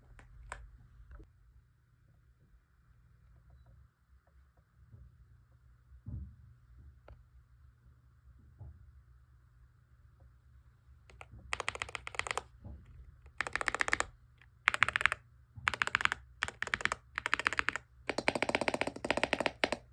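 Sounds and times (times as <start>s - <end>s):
mechanical keyboard typing: 0.0s - 0.7s, 11.1s - 12.5s, 13.3s - 19.9s.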